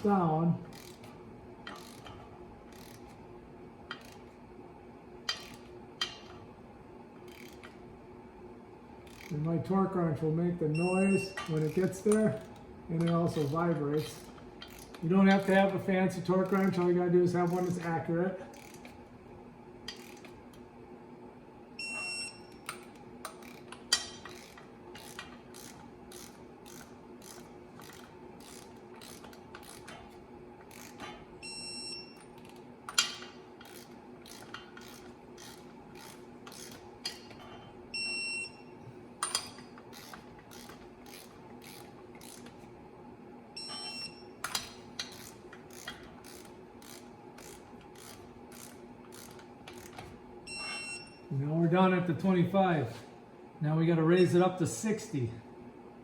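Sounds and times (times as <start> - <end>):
faint steady hum: 0.0 - 56.0
torque wrench ratcheting clicks: 0.7 - 3.2, 3.9 - 4.3, 5.3 - 6.3, 7.3 - 7.8, 9.0 - 9.4, 11.0 - 19.0, 19.9 - 20.4, 22.6 - 31.2, 32.2 - 37.5, 39.2 - 42.6, 43.7 - 50.1.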